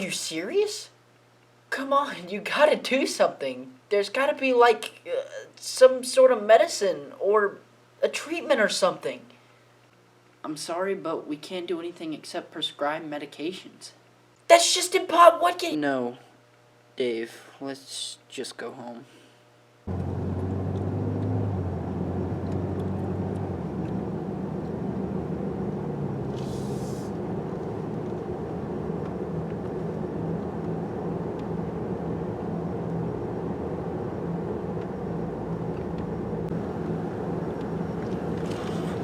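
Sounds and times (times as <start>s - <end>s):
engine and road rumble: 19.9s - 39.0s
brief hiss: 26.3s - 27.2s.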